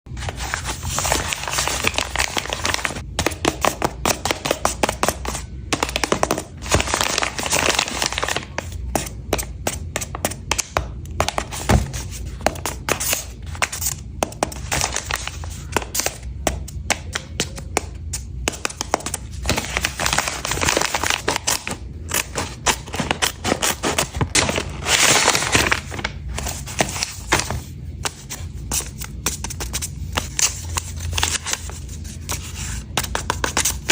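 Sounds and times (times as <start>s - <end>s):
packaging crinkling and rustling: 0.2s - 3.0s, 5.9s - 8.7s, 14.5s - 15.7s, 19.3s - 27.7s.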